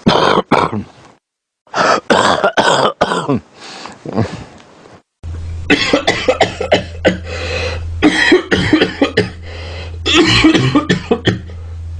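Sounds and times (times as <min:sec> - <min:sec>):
man coughing harshly: 0:00.0 - 0:00.9, 0:01.8 - 0:03.4, 0:05.7 - 0:07.4, 0:08.0 - 0:09.4, 0:10.0 - 0:11.6
low steady hum: 0:00.0 - 0:11.9.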